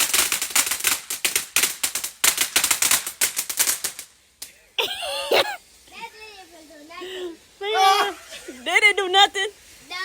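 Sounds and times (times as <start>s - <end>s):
firework crackling: 0.0s - 10.0s.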